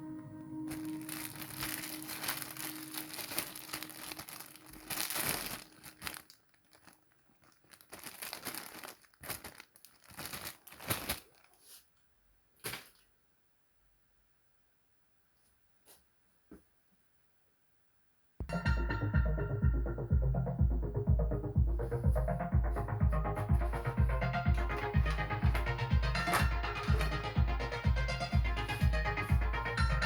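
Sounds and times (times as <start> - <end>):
packaging crinkling: 0.7 - 11.8, 24.6 - 27.3.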